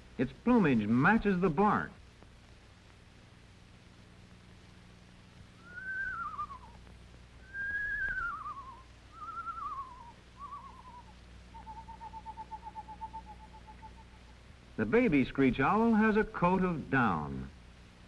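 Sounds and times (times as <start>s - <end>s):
screech owl calling: 5.6s - 6.8s, 7.4s - 14.4s.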